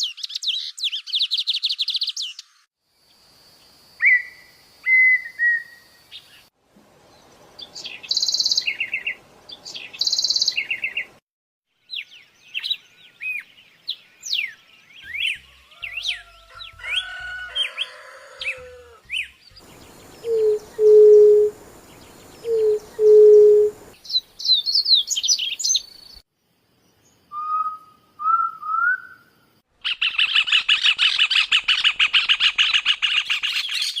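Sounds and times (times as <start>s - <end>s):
birds chirping and whistling: 7.1s - 11.1s, 11.9s - 26.2s, 27.3s - 29.2s, 29.8s - 34.0s
low bird hoot: 17.9s - 19.1s, 20.0s - 23.9s
rapid bird trill: 29.8s - 34.0s.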